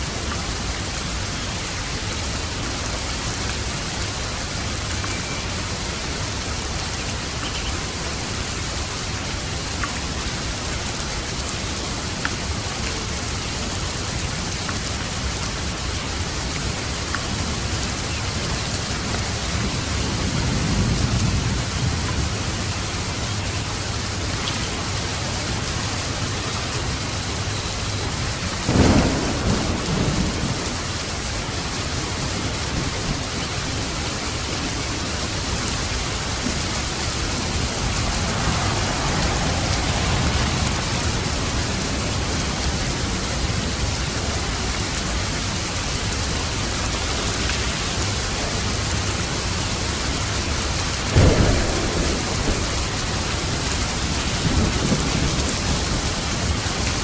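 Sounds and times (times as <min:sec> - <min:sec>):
heavy rain: 0:00.0 - 0:57.0
rolling thunder rumble: 0:05.5 - 0:57.0
close thunder clap: 0:28.7 - 0:30.8, 0:36.2 - 0:43.7, 0:51.0 - 0:56.6.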